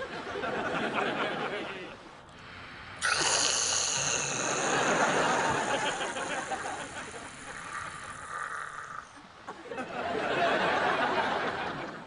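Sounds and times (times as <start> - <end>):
hissing air rush: 2.4 - 9.1.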